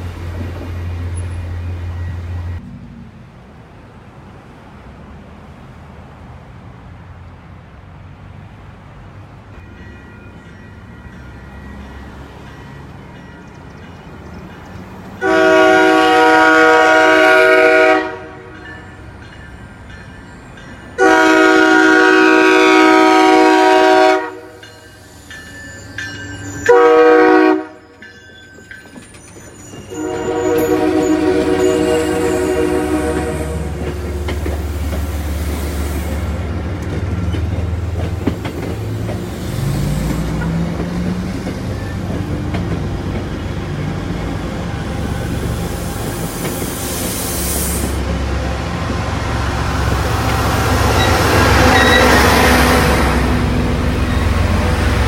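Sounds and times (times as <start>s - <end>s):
train rumbling past: 0.0s - 55.0s
train horn blasts: 15.2s - 18.7s, 21.0s - 24.7s, 26.6s - 28.0s, 29.9s - 33.9s, 50.1s - 54.8s.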